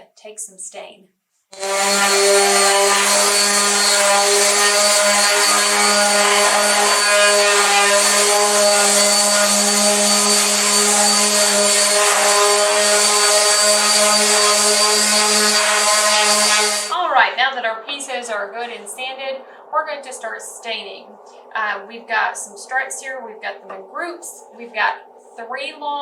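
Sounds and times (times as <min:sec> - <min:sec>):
orbital sander on wood: 0:01.5 - 0:17.0.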